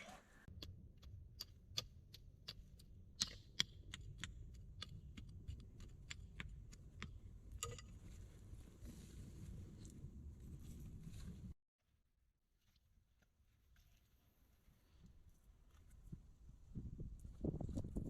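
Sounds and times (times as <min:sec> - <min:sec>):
low rumble of burning fire: 0:03.7 - 0:11.6.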